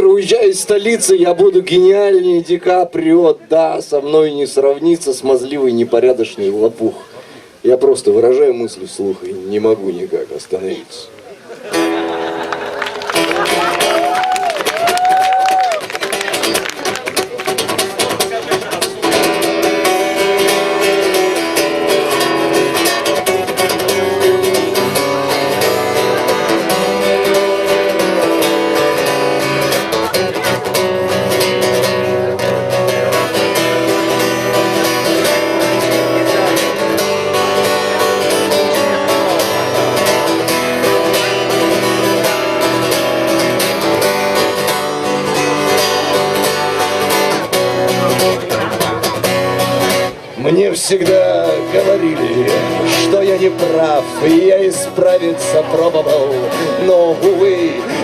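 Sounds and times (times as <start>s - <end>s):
acoustic guitar strumming: 11.7s - 58.0s.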